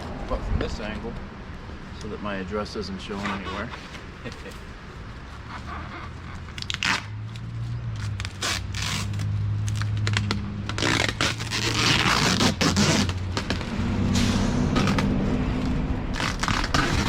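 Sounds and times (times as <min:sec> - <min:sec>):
packing tape ripping: 0:06.4 - 0:13.8, 0:14.7 - 0:17.0
cardboard scraping and crunching: 0:06.7 - 0:13.8, 0:14.8 - 0:17.0.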